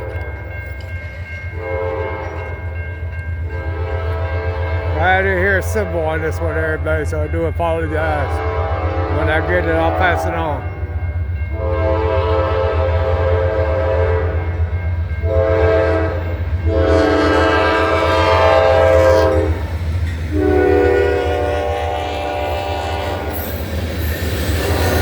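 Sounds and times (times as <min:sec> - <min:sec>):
locomotive air horn blasts: 0:01.5 - 0:02.5, 0:03.4 - 0:06.4, 0:08.2 - 0:10.4, 0:11.5 - 0:14.5, 0:15.2 - 0:19.6, 0:20.3 - 0:23.4
wheels hissing on rail: 0:17.8 - 0:25.0.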